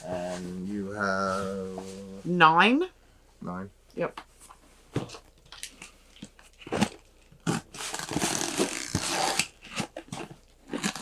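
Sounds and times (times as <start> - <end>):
cardboard scraping: 0.0 - 0.6, 6.6 - 11.0
cardboard tearing and rustling: 6.6 - 11.0.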